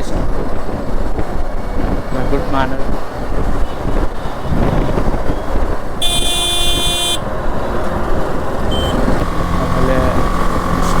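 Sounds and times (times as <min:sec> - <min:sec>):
motorcycle wind and road noise: 0:00.0 - 0:11.0
vehicle horn blast: 0:06.0 - 0:07.3, 0:08.7 - 0:09.5.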